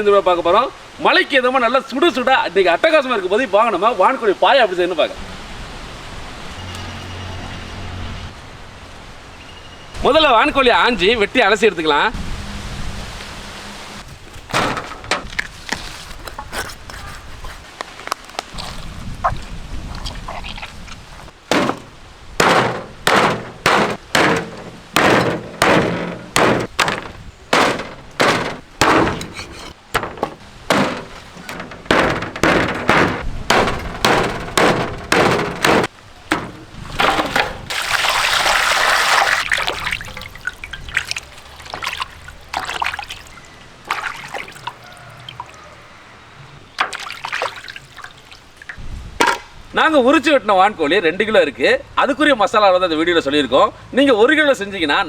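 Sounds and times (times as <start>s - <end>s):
water splashes: 12.5s - 49.7s
water rushing over meat: 18.5s - 21.8s, 36.7s - 45.7s.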